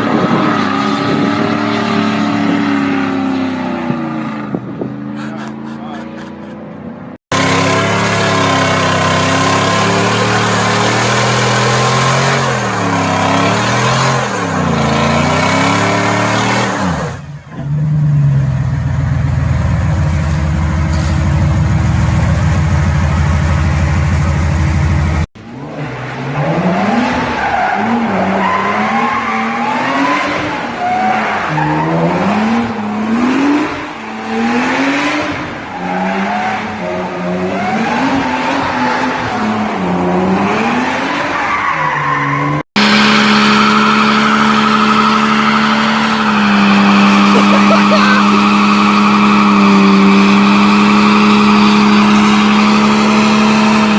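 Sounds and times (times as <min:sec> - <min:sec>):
car engine revving: 0:00.0 - 0:53.9
tyre squeal: 0:26.8 - 0:33.6.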